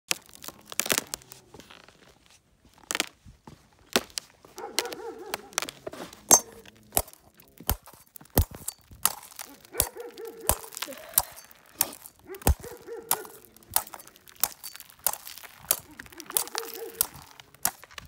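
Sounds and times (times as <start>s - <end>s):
dogs barking and whining: 4.6s - 6.7s, 9.4s - 14.1s, 15.7s - 17.5s.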